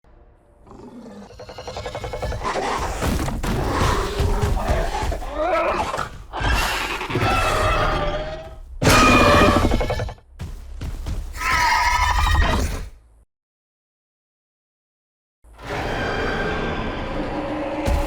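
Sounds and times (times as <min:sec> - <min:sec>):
dinosaur growling roar: 0:00.6 - 0:10.0.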